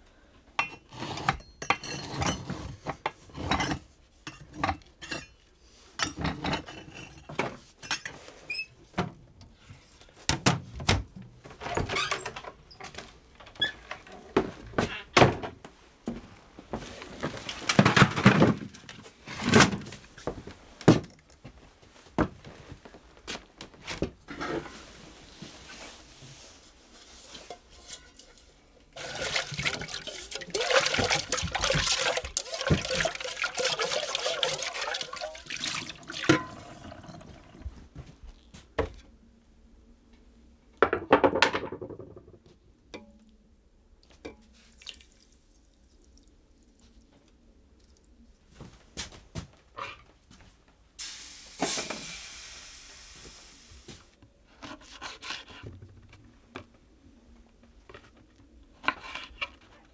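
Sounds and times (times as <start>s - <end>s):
pots and utensils clunking: 0.6s - 5.4s, 6.0s - 8.2s, 27.1s - 37.8s, 51.6s - 52.2s
water pouring: 29.0s - 37.8s, 44.7s - 47.2s.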